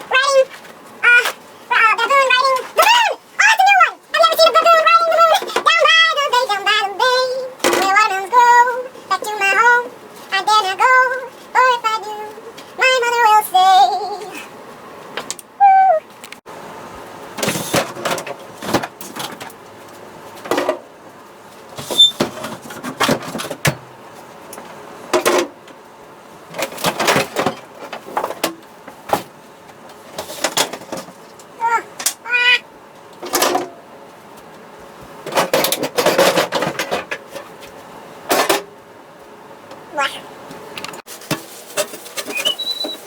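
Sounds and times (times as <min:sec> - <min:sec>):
food containers clattering: 0:35.2 - 0:37.5.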